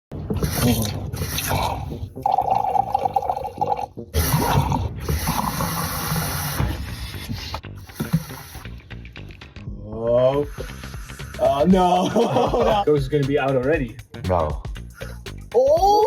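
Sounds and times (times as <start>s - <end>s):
water running and pouring: 0.2s - 7.0s, 7.8s - 9.0s.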